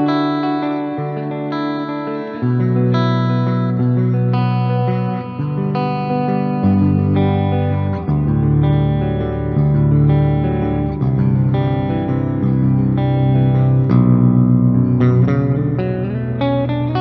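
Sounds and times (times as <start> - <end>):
electric guitar chords and notes: 0.0 - 17.0.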